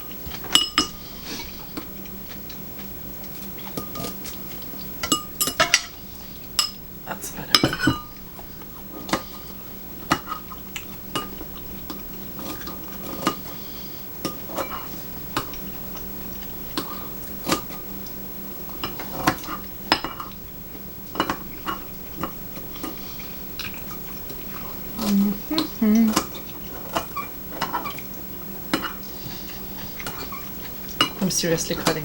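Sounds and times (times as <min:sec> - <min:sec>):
steady low hum: 0:00.0 - 0:32.0
utensils clinking against dishes: 0:00.3 - 0:02.6, 0:03.6 - 0:08.2, 0:10.1 - 0:13.6, 0:14.2 - 0:15.6, 0:18.8 - 0:20.4, 0:21.1 - 0:23.0, 0:25.0 - 0:28.1, 0:28.7 - 0:32.0.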